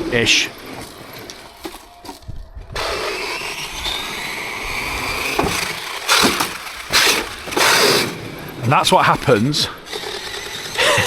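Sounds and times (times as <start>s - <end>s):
electric motor whining: 0.0s - 11.0s
gears skipping: 0.0s - 11.0s.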